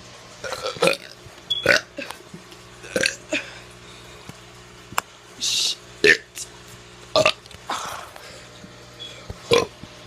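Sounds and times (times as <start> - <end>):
person burping: 0.4 - 2.2, 2.8 - 3.7, 6.0 - 6.4, 7.1 - 8.2, 9.5 - 9.8.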